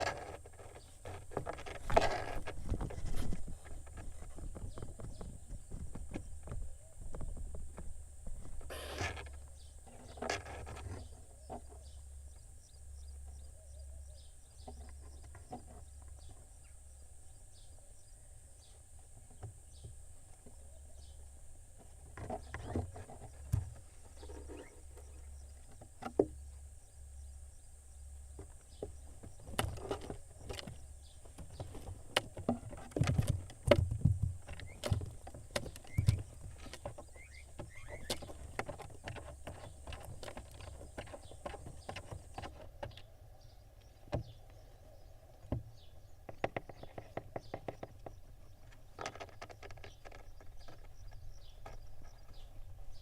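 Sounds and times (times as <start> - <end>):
owl chicks scuffling in nest box: 0.0 - 12.0, 21.7 - 26.5, 28.4 - 43.2.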